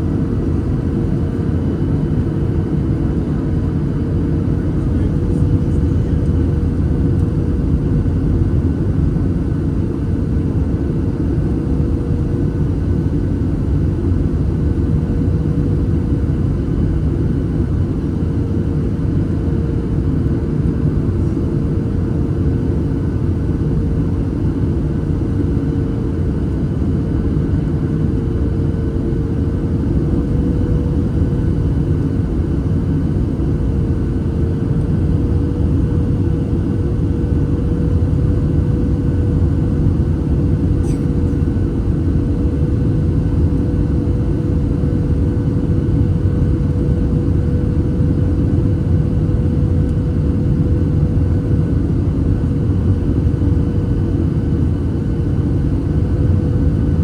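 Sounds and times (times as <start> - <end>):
steady hum: 0.0 - 10.0, 20.3 - 52.2
airplane engines droning: 0.0 - 57.0.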